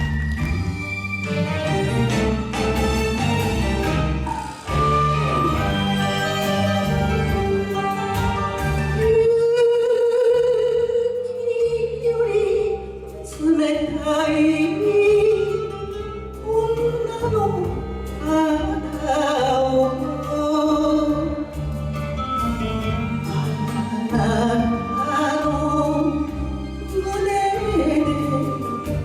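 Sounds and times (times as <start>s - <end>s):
woman singing with vibrato: 4.2s - 8.2s, 8.9s - 21.7s, 23.0s - 29.0s.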